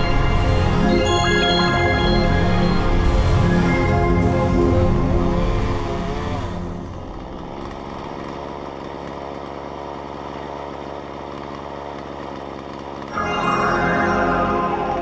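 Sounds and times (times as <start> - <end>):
chainsaw idling: 4.5 - 15.0.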